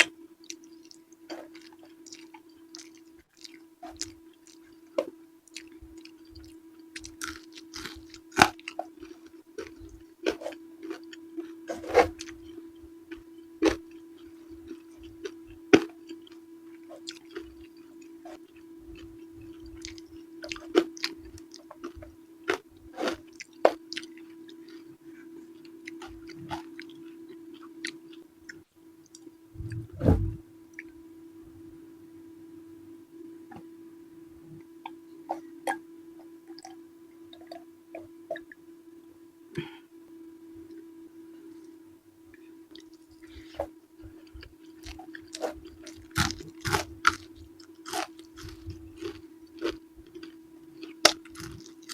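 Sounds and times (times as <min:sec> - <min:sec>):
person chewing: 0:00.0 - 0:30.9, 0:36.4 - 0:38.6, 0:42.7 - 0:51.9
low hum: 0:23.9 - 0:51.7
low thump: 0:29.6 - 0:30.4.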